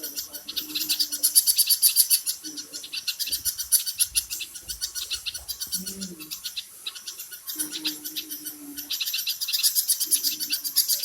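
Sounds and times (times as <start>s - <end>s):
flock of small birds chirping: 0.0s - 11.0s.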